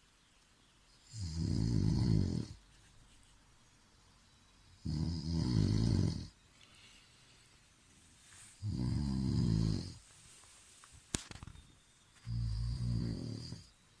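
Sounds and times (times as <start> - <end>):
person snoring: 1.1 - 2.6, 4.8 - 6.4, 8.6 - 10.0, 12.3 - 13.7.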